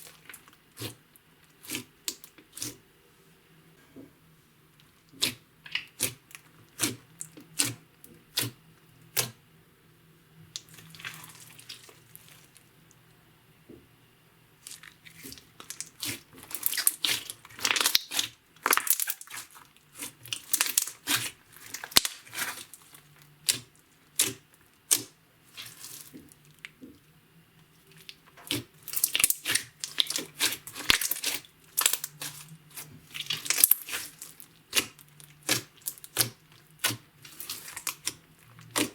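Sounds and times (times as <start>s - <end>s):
slime popping and crackling: 14.7s - 26.1s, 28.0s - 38.9s.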